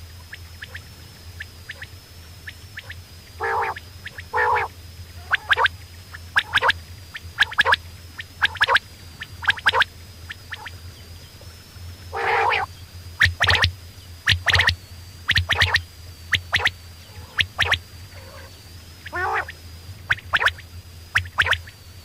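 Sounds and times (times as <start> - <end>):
faint steady hum: 0.0 - 22.0
quail calling: 3.4 - 5.6, 12.1 - 12.7, 16.4 - 19.6.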